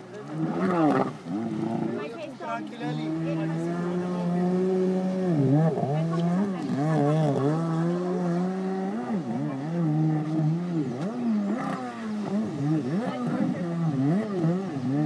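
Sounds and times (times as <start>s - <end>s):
jet ski engine revving: 0.0s - 15.0s.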